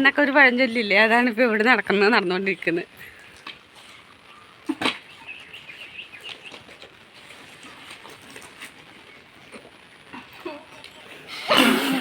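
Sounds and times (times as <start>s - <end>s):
outdoor background noise: 0.0s - 12.0s
faint bird chirps: 4.3s - 6.7s.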